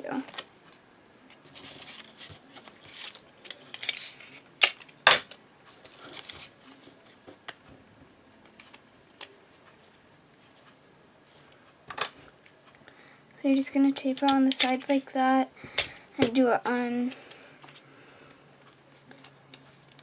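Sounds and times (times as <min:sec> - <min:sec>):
paper rustling: 0:01.3 - 0:04.5.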